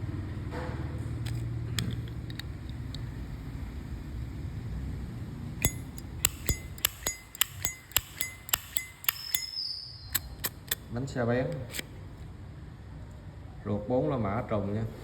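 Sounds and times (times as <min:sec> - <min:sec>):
lighter lid metallic clinks: 0:05.6 - 0:10.8.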